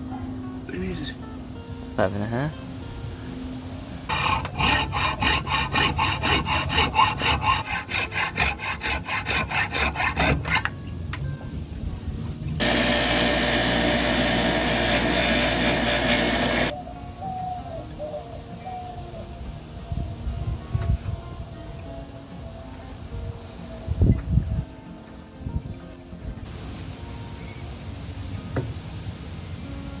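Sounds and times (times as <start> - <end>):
power tool running: 4.1 - 10.4, 12.6 - 16.8
hand saw strokes: 4.1 - 10.7, 12.6 - 16.8.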